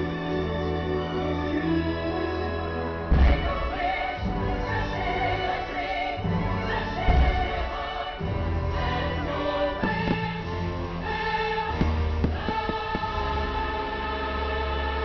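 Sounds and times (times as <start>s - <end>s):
choir singing: 0.0s - 15.0s
orchestral music: 0.0s - 15.0s
firework bangs and booms: 9.8s - 10.5s, 11.7s - 13.3s.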